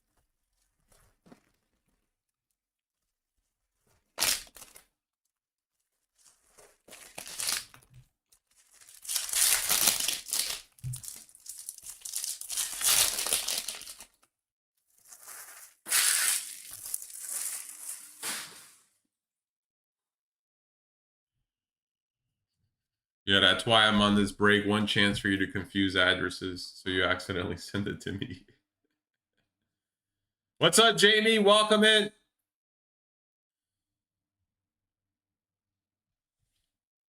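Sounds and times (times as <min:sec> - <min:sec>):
wrappers crinkling: 0:00.0 - 0:05.0, 0:05.7 - 0:14.3, 0:14.9 - 0:18.8
wrapper tearing: 0:03.9 - 0:04.9, 0:06.1 - 0:14.3, 0:14.9 - 0:18.8.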